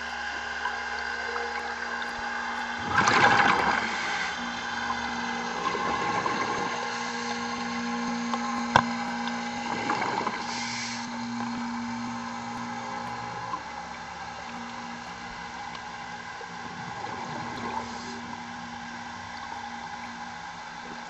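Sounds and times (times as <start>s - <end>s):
exhaled bubbles gurgling underwater: 0.0s - 21.0s
steady machine hum: 0.0s - 21.0s
regulator inhale hiss: 10.4s - 11.3s.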